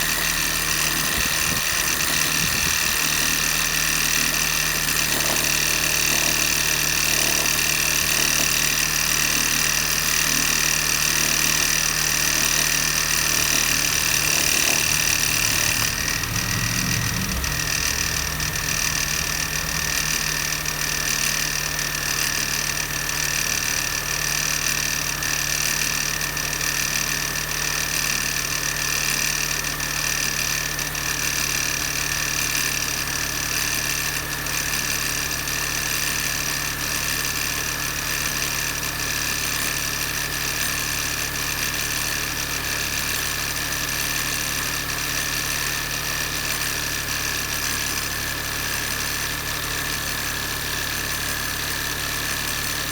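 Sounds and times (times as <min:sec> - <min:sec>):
high whine: 0:13.2 - 0:22.6
car engine idling: 0:13.7 - 0:21.8.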